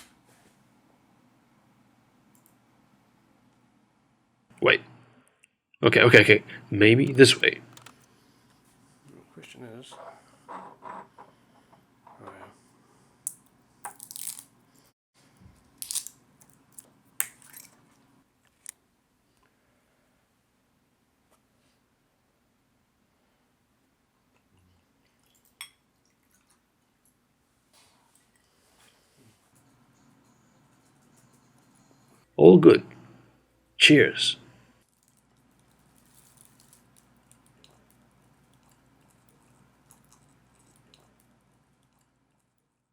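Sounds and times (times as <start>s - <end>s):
rustling: 34.8s - 38.0s.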